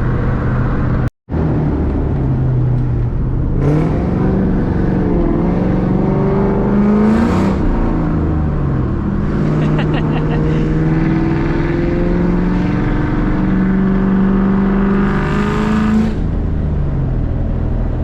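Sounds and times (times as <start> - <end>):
car engine accelerating: 0.0 - 18.0.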